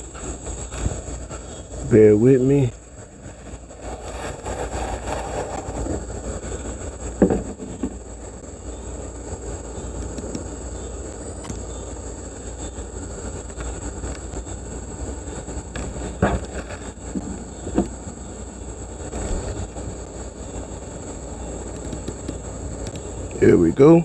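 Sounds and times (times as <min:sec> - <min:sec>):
microphone handling rumble: 0:00.0 - 0:24.0.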